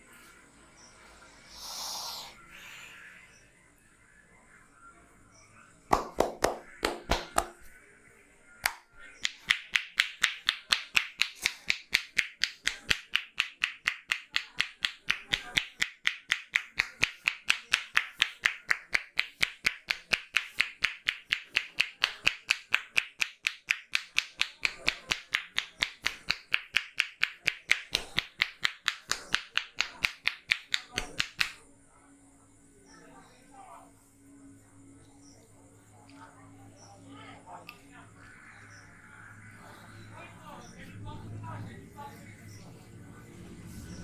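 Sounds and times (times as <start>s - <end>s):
hands slapping head and shoulders: 5.9s - 7.7s, 8.6s - 31.6s.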